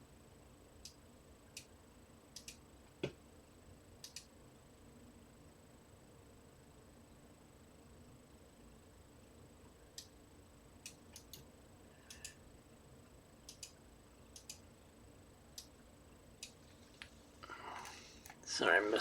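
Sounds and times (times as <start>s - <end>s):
faint sharp clicks: 2.4s - 2.6s, 4.0s - 4.3s, 10.8s - 12.4s, 13.4s - 14.6s.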